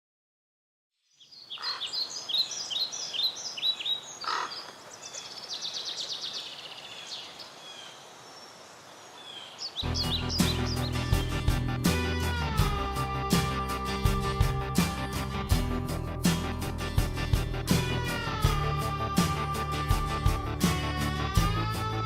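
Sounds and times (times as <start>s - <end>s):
outdoor ambience hiss: 1.0s - 9.9s
birds chirping and trilling: 1.0s - 21.8s
music: 9.8s - 22.0s.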